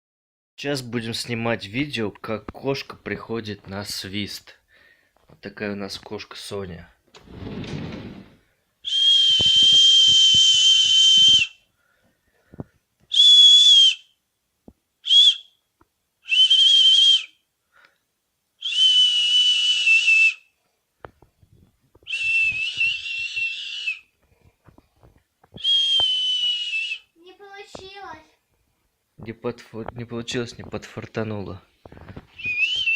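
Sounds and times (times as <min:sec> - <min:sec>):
person whistling: 0:08.9 - 0:11.6, 0:13.1 - 0:14.1, 0:15.0 - 0:15.5, 0:16.3 - 0:17.4, 0:18.6 - 0:20.4, 0:22.0 - 0:24.1, 0:25.6 - 0:27.1, 0:32.4 - 0:32.9.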